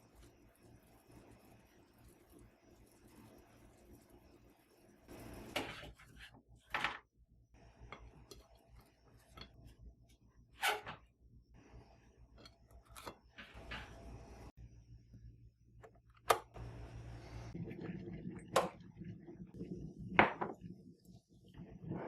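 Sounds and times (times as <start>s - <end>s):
kitchen items knocking and clattering: 5.2s - 7.1s, 12.4s - 14.3s, 20.1s - 20.8s.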